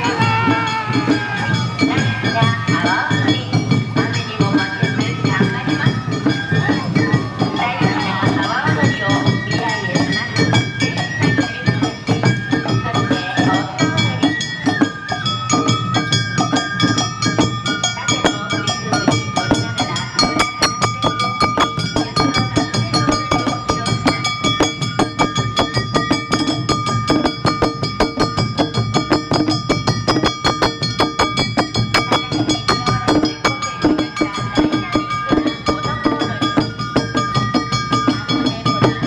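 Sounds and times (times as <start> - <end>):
bamboo flute melody: 0.0 - 39.0
taiko drums: 0.0 - 39.0
rapidly struck gong: 17.2 - 38.9.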